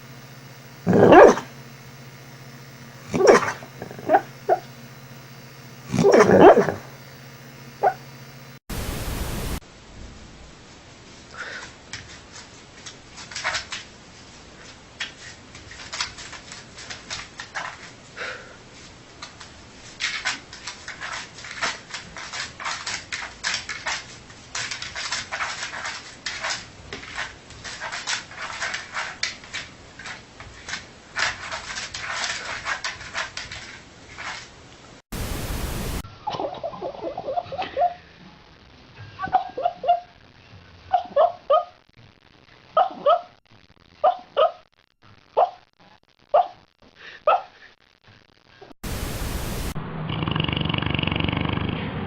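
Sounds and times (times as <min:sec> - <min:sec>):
dog whimpering and yipping: 0:00.9 - 0:01.4, 0:03.1 - 0:04.6, 0:06.0 - 0:06.8, 0:36.3 - 0:38.0, 0:39.2 - 0:40.1, 0:40.9 - 0:41.7
loud hiss: 0:08.7 - 0:09.7, 0:35.1 - 0:36.0, 0:48.8 - 0:49.8.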